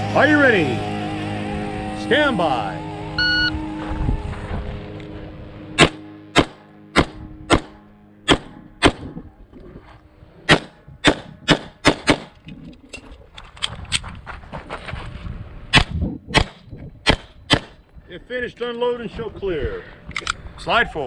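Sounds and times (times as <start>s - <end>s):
pistol shots: 5.8s - 9.2s, 10.5s - 12.4s, 15.7s - 17.8s.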